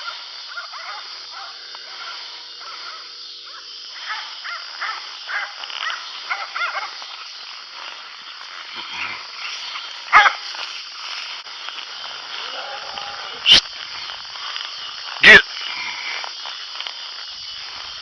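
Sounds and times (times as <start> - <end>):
dogs barking: 10.1 - 10.5.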